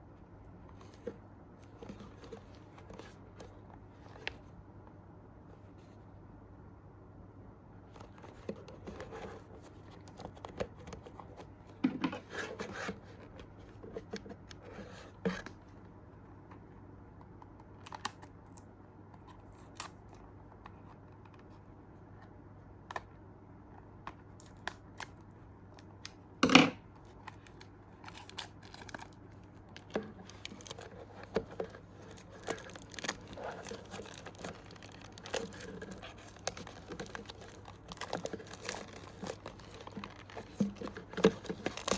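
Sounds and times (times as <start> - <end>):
packaging tearing and crinkling: 27.4 - 41.9.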